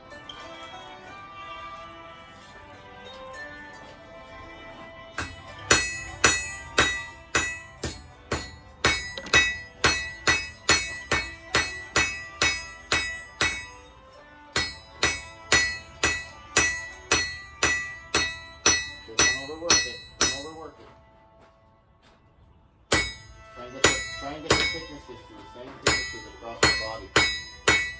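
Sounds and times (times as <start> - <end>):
hammer striking steel on anvil: 5.2 - 14.0, 14.6 - 20.8, 22.9 - 27.9.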